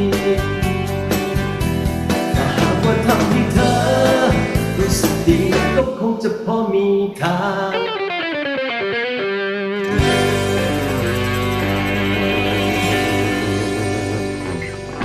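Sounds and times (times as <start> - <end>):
singing over instruments: 2.3 - 7.8.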